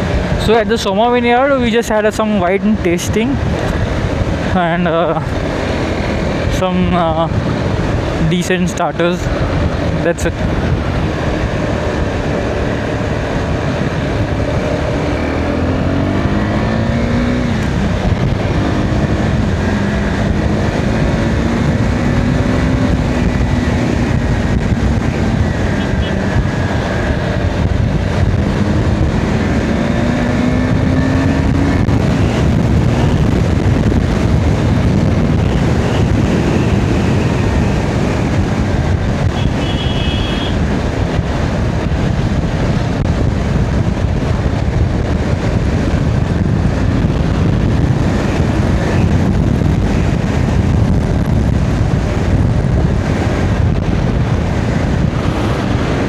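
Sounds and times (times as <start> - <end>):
wind rushing on microphone: 0.0 - 56.0
motorcycle engine: 3.4 - 8.2, 9.2 - 56.0.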